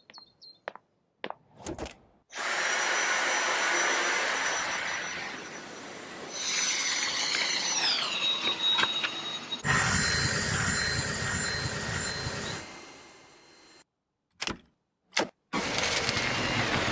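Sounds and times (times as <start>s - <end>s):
vacuum cleaner motor whining: 2.4s - 13.8s, 15.6s - 16.9s.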